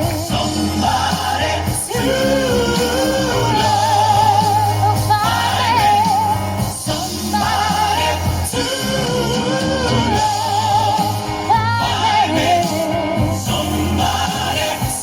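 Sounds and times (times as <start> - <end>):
amplified backing track: 0.0 - 15.0
person singing pop live: 0.0 - 15.0.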